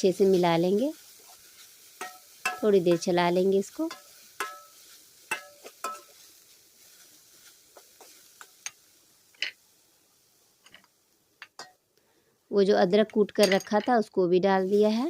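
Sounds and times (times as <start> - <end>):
utensil scraping in a pan: 0.0 - 9.6.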